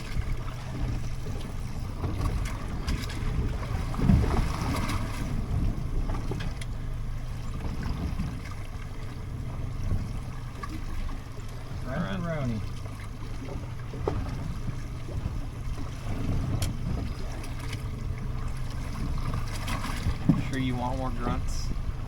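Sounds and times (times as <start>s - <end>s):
water splash: 0.0s - 6.7s, 7.6s - 22.0s
water slapping against boat hull: 0.0s - 22.0s
wind on microphone: 14.1s - 22.0s.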